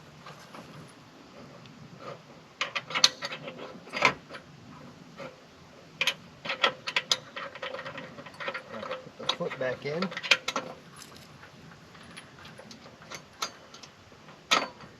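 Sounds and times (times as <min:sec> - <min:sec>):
metallic clicks and knocks: 0:02.6 - 0:04.5, 0:06.0 - 0:11.3, 0:11.9 - 0:14.9.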